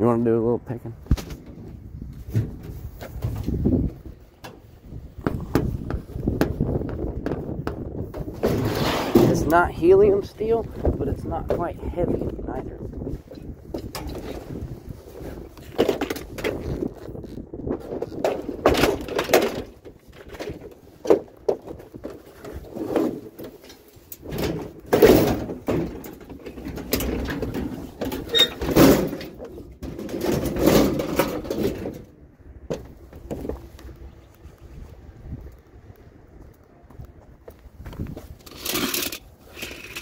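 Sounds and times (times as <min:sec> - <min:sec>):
scrap metal clanking and clattering: 0:08.2 - 0:09.5, 0:17.8 - 0:32.1, 0:38.4 - 0:40.0.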